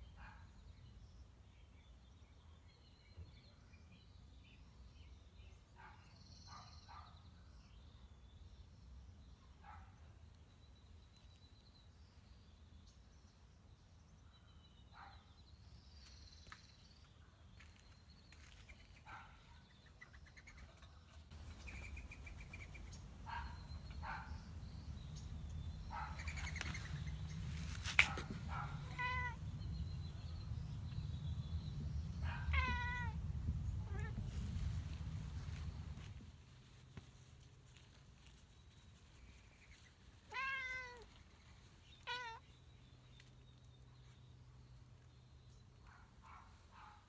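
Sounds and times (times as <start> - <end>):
low rumble: 22.7 - 36.0
cat meowing: 28.6 - 29.4, 32.4 - 33.2, 33.8 - 34.2, 40.3 - 41.1, 42.0 - 42.4.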